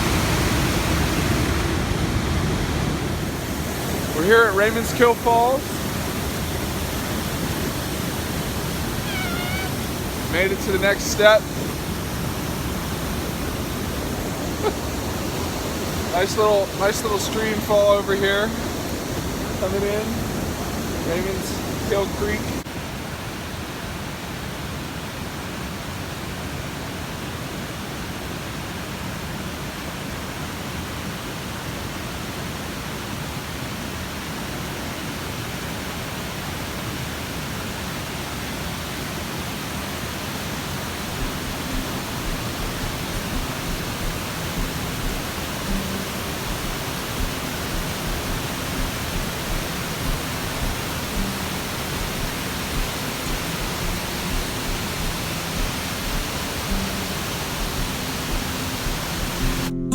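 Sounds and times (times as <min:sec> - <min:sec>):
water cascading down a stream: 0:00.0 - 0:59.8
soft low thumps: 0:41.1 - 0:59.9.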